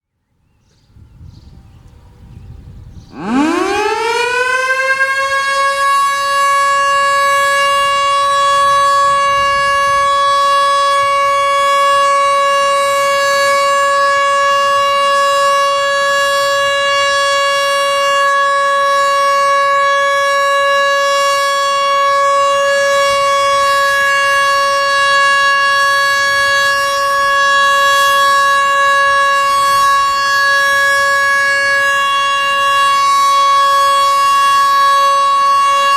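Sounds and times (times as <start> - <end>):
warning siren winding up: 3.1 - 35.9.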